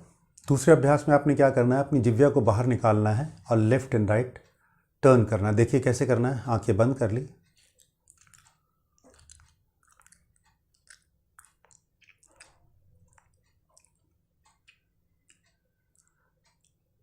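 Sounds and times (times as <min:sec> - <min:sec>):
wet mouth clicks: 0:07.5 - 0:17.0.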